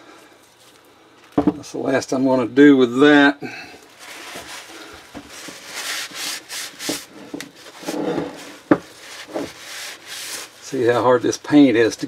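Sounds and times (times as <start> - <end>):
scraping on painted metal: 5.4 - 10.5.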